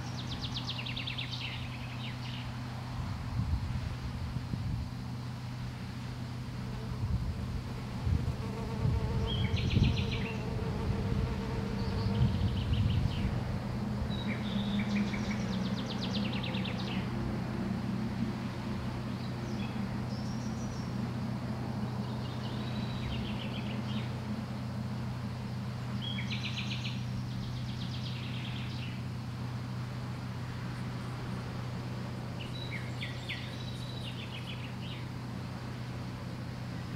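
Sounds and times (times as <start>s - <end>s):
songbirds trilling: 0.0s - 2.6s, 7.6s - 36.9s
steady low buzzing hum: 0.0s - 36.9s.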